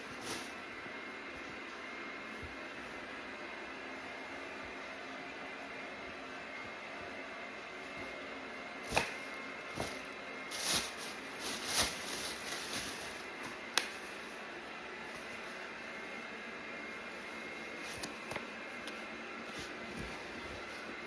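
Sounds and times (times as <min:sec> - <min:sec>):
steady hiss: 0:00.0 - 0:01.5, 0:08.8 - 0:16.2
fabric rustling: 0:08.8 - 0:14.4.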